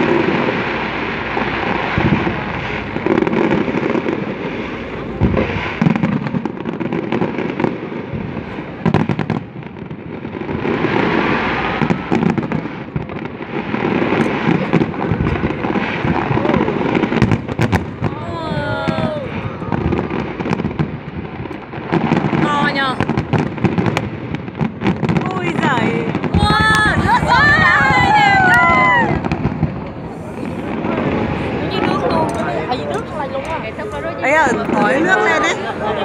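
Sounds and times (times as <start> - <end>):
fireworks crackling and banging: 0.0 - 36.0.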